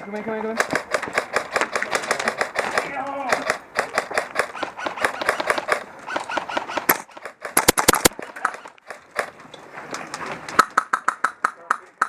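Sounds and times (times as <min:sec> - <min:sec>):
airsoft rifle shots: 0:00.6 - 0:09.3.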